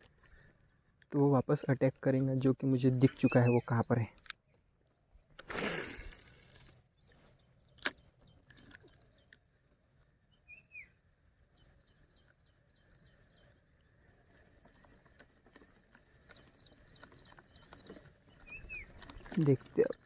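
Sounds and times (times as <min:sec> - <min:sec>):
small birds chirping: 0:00.0 - 0:20.0
sharp click: 0:07.7 - 0:09.4.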